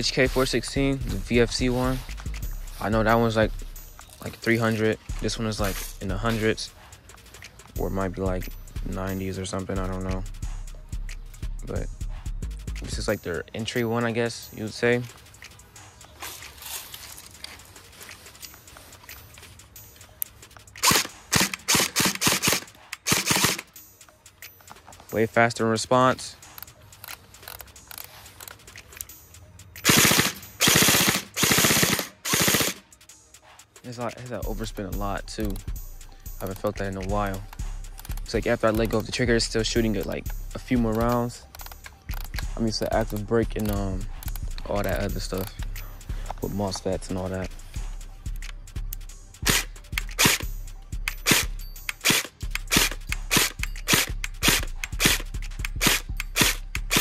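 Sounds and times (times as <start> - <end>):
background music: 0.0 - 57.0
airsoft gun bursts: 20.8 - 23.8, 29.8 - 32.8, 49.4 - 50.5, 51.2 - 57.0.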